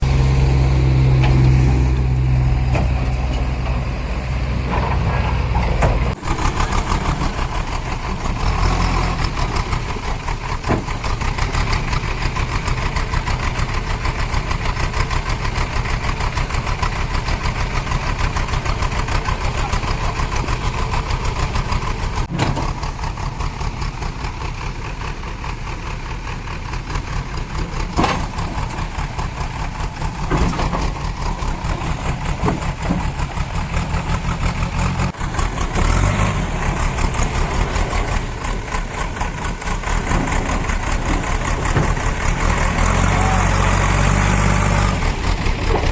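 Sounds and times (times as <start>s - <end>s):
truck diesel engine running: 0.0s - 45.9s.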